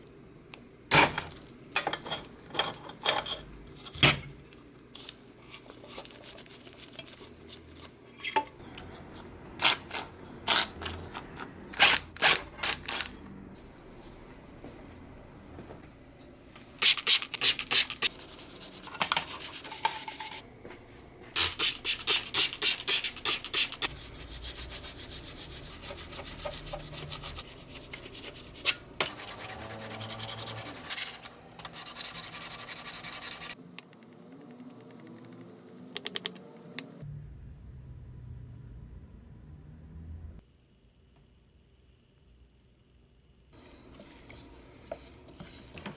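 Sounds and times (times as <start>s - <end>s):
hand sanding strokes on metal: 21.4s - 33.6s.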